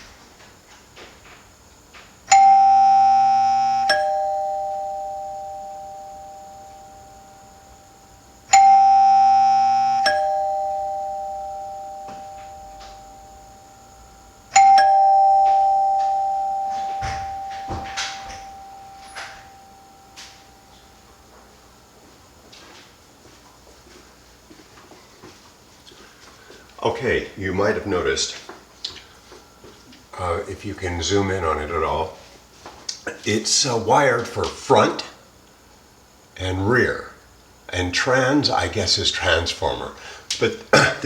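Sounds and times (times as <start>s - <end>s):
doorbell ding-dong chime: 2.3s - 20.9s
small knocks: 15.4s - 20.4s.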